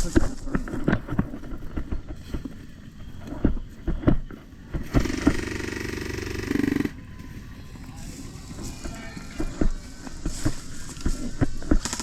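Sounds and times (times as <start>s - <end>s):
airsoft gun full-auto buzz: 4.8s - 7.0s, 11.7s - 12.0s.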